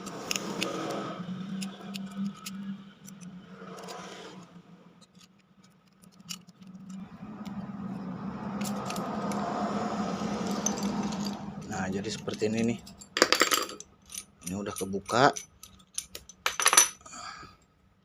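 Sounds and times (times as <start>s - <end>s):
hand tools scraping metal: 0.0s - 7.0s, 10.4s - 16.5s
small metal clicks: 0.0s - 7.6s, 8.6s - 9.5s, 10.5s - 17.0s.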